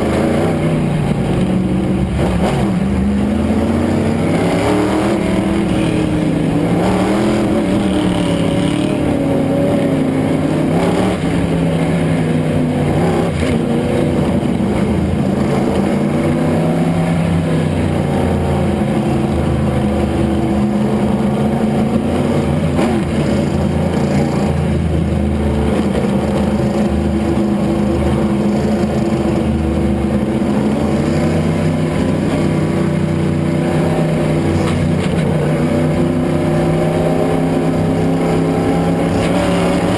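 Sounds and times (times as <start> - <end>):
race car engine running hard: 0.0 - 39.9.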